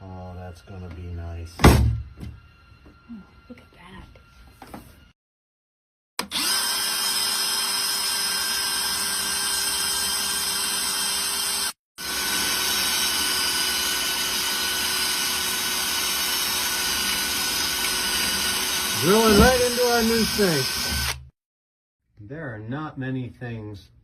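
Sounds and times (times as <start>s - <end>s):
power drill drilling into sink: 6.2s - 21.3s.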